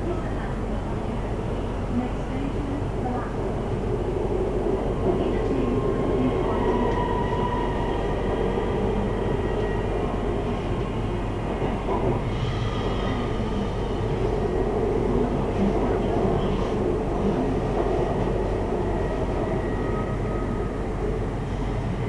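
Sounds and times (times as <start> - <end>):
metro train rumble: 0.0 - 22.0.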